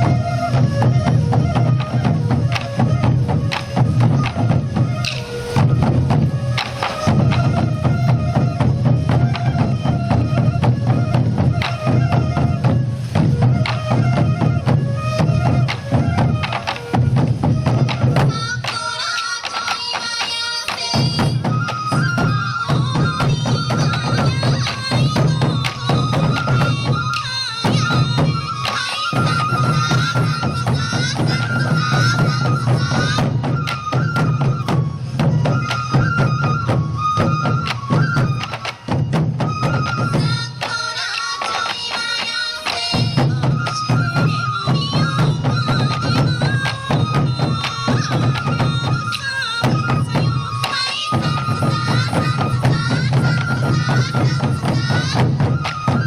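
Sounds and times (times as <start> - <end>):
bamboo flutes playing: 0.0 - 56.0
taiko drums beating: 0.0 - 56.0.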